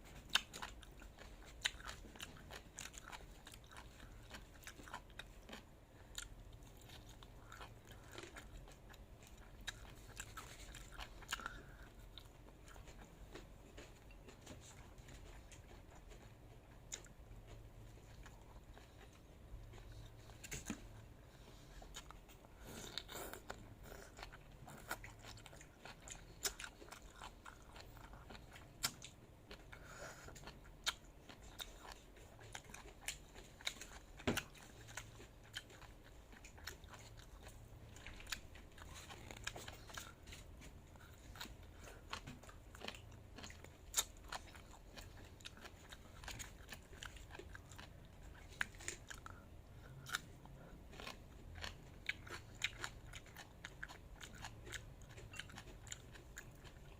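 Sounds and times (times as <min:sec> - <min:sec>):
person chewing crunchy food: 0:00.0 - 0:56.9.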